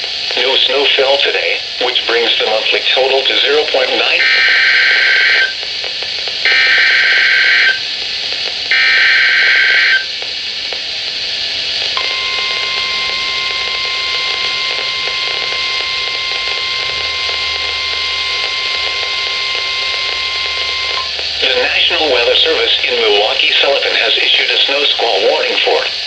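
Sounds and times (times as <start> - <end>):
radio hiss: 0.0 - 26.0
steady warning alarm tone: 0.4 - 26.0
warbling digital header tones: 12.0 - 25.2.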